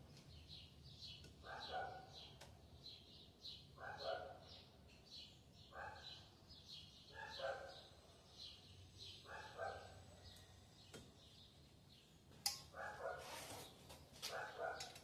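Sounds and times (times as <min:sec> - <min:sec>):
dog barking faintly: 0:14.2 - 0:15.0.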